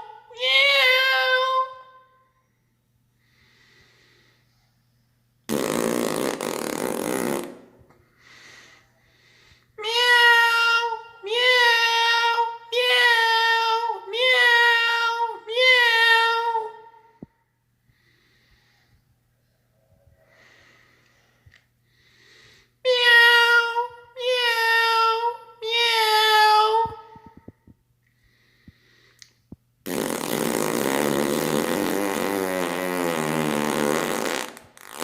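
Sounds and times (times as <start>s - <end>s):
person imitating cat meows: 0.0s - 2.0s, 9.8s - 16.9s, 22.9s - 27.1s
rough fart: 5.5s - 7.8s, 29.8s - 35.0s.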